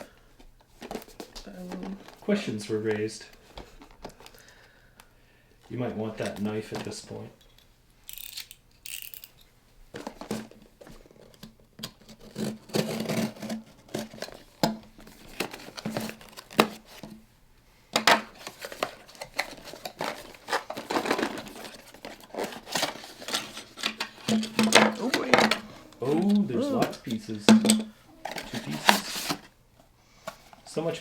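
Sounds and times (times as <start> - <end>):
plastic packaging crinkling: 18.4 - 27.4, 28.1 - 29.5.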